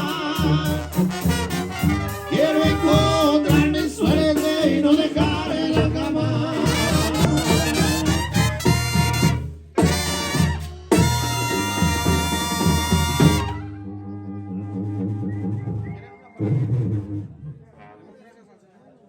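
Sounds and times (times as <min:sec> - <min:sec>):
person singing: 0:00.0 - 0:01.1, 0:02.1 - 0:08.3
brass band with drums: 0:00.0 - 0:18.1.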